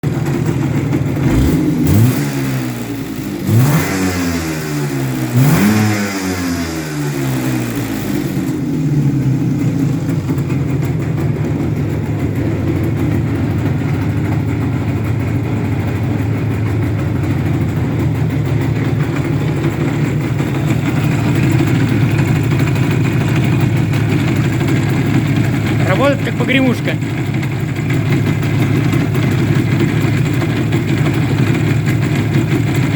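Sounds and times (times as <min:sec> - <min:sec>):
two-stroke engine revving and idling: 0:00.0 - 0:32.9
engine piston knock rattle: 0:10.0 - 0:32.9.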